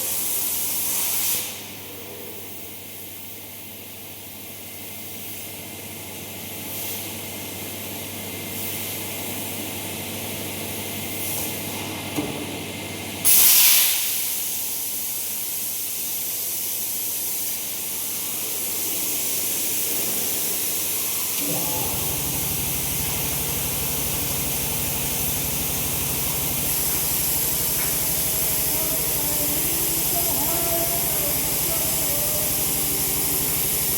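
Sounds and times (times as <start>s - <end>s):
cutting torch hissing: 21.2s - 33.9s.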